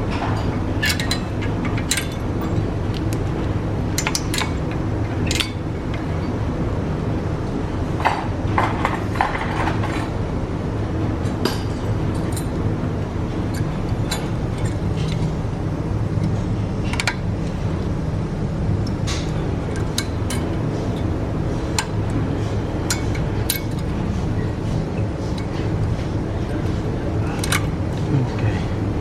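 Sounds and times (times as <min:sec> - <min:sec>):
steady low hum: 0:00.0 - 0:29.0
metal tools clinking: 0:00.3 - 0:02.6, 0:19.1 - 0:26.6.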